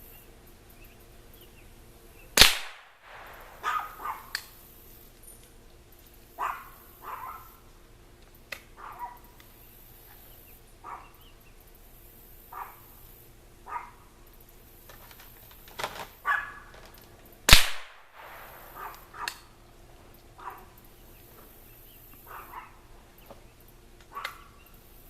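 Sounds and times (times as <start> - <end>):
rifle shot: 2.4 - 4.2, 17.5 - 19.0
faint calls: 3.0 - 4.6, 6.0 - 7.8, 8.6 - 14.4, 18.2 - 25.0.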